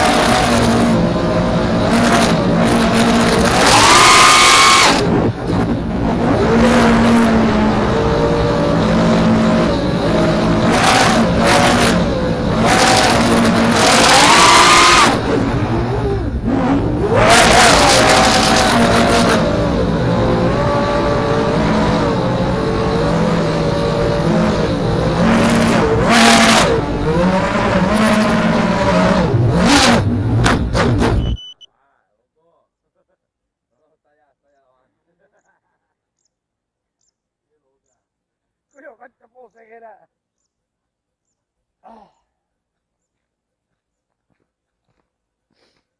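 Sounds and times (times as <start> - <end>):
quadcopter motors whining: 0.0 - 6.8, 7.5 - 29.6.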